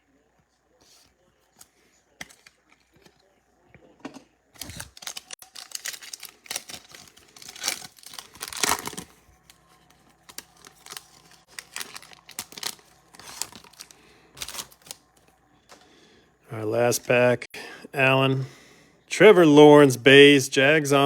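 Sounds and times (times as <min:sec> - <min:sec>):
cards rustling and clicking: 0:00.8 - 0:03.2, 0:04.6 - 0:15.9
wrapper tearing and crinkling: 0:04.6 - 0:15.2.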